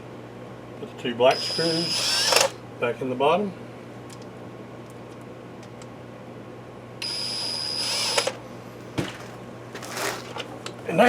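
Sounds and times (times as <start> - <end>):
electric screwdriver whine: 1.4 - 2.6, 7.0 - 8.4, 9.8 - 10.4.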